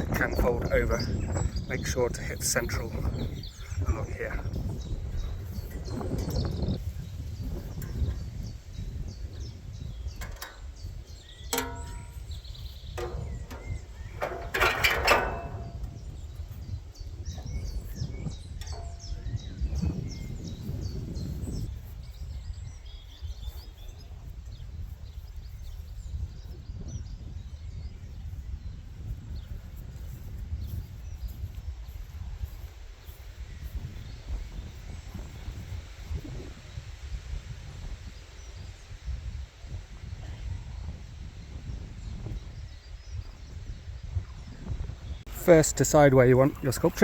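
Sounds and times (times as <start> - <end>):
birds chirping: 0.0 - 24.2, 42.6 - 47.0
low outdoor rumble: 11.0 - 16.5
metal parts knocking and clinking: 11.5 - 16.0.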